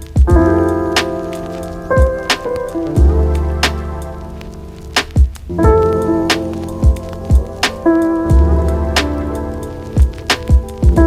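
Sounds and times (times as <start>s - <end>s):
calm keyboard music with soft beat: 0.0s - 11.0s
low drum hits dropping in pitch: 2.0s - 4.1s.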